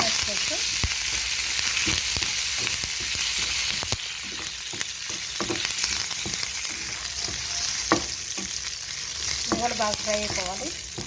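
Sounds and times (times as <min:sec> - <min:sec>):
leaves sizzling in hot oil: 0:00.0 - 0:11.0
spoon scraping a pan: 0:01.2 - 0:11.0.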